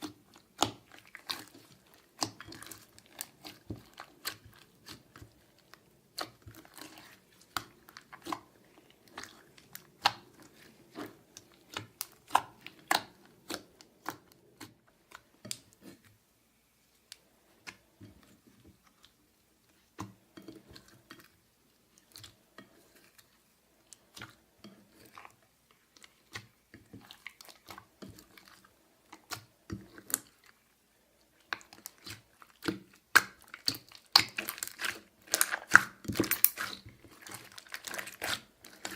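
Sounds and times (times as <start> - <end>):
slime kneaded with sticky clicks: 0.0 - 16.0, 23.8 - 30.5, 31.4 - 38.9.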